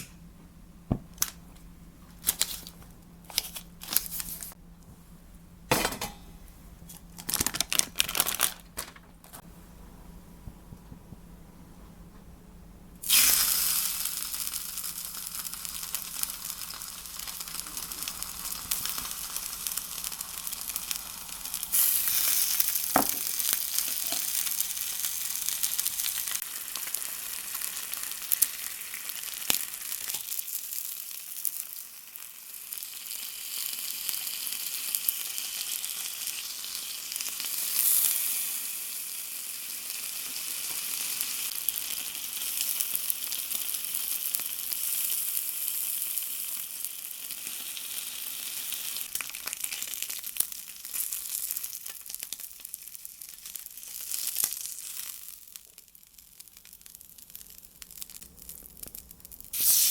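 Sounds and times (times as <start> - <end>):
pork sizzling in a pan: 13.0 - 59.9.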